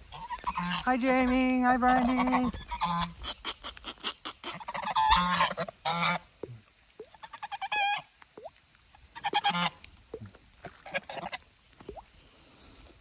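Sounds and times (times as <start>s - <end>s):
geese honking: 1.8s - 6.3s, 9.1s - 9.8s.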